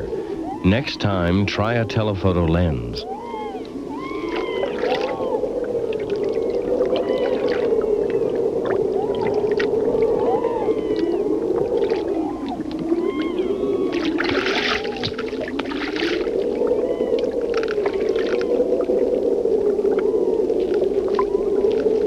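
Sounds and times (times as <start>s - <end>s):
seal chirps underwater: 0.0s - 15.4s.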